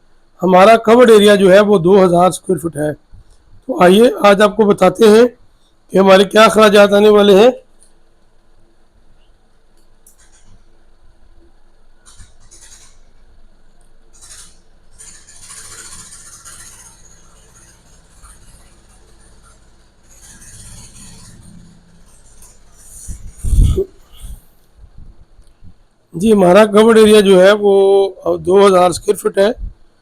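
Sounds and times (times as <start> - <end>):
faint scratching and rustling: 7.4 - 25.8.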